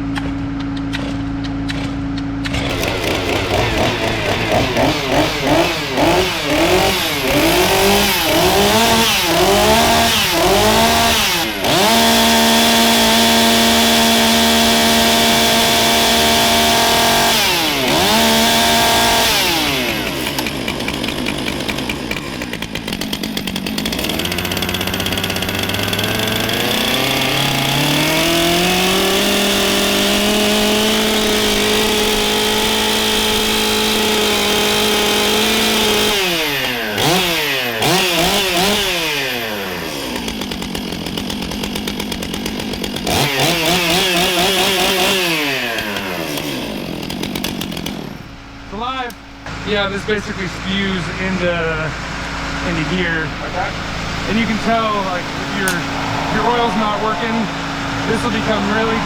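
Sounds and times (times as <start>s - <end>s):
chainsaw engine revving: 0.0s - 59.0s.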